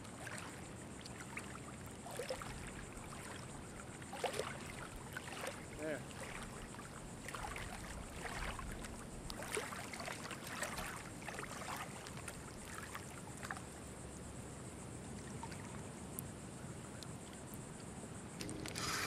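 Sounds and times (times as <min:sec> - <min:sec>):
shallow water splashing: 0:00.0 - 0:13.8, 0:15.1 - 0:15.9.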